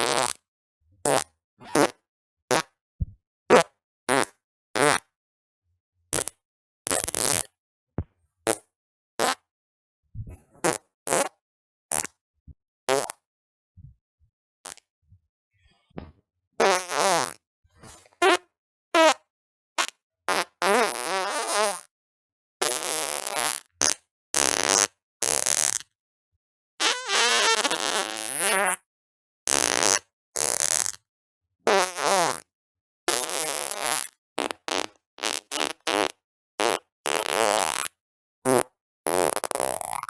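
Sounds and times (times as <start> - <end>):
farts: 0.0 - 0.4, 1.0 - 2.8, 3.5 - 5.2, 6.1 - 7.6, 8.5 - 9.5, 10.6 - 12.2, 12.9 - 13.2, 15.7 - 18.4, 19.0 - 19.2, 19.8 - 21.9, 22.6 - 25.9, 26.8 - 28.8, 29.5 - 31.1, 31.7 - 32.5, 33.1 - 40.0.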